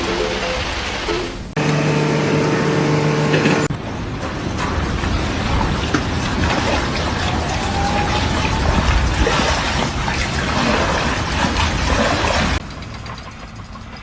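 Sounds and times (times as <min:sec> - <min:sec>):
heavy engine rumbling: 0:01.6 - 0:03.7
held horn tone: 0:01.6 - 0:03.7.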